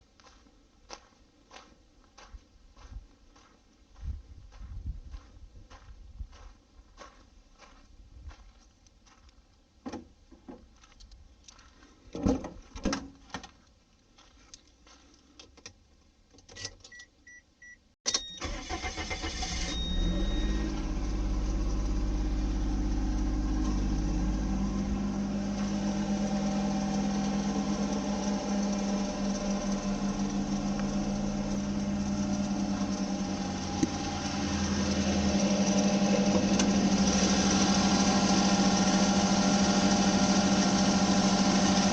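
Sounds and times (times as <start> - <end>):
short beeps: 16.9 - 18.4, 19.6 - 20.7
car engine starting and running: 18.1 - 41.9.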